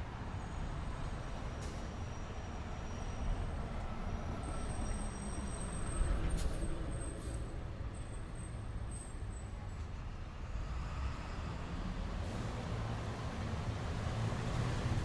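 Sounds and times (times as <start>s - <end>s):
street traffic rumble: 0.0s - 15.0s
faint high squeal: 1.5s - 9.9s.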